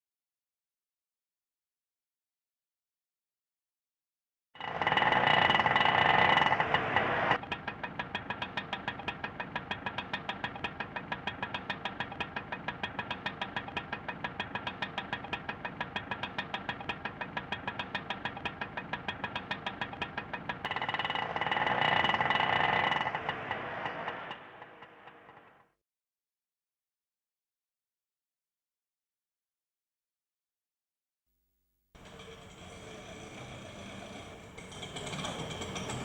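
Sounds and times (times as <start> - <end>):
small engine putt-putt: 4.6 - 25.7, 32.0 - 36.0.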